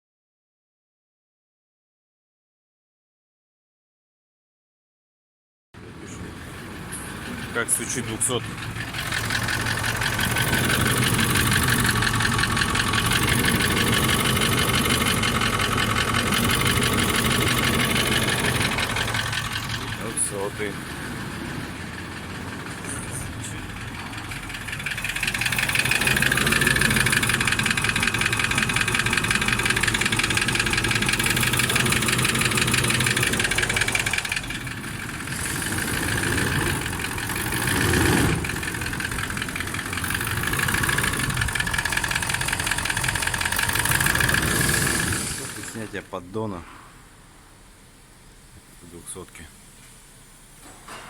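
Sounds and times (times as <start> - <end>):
diesel engine running: 5.8 - 48.2
engine knocking: 6.4 - 46.0.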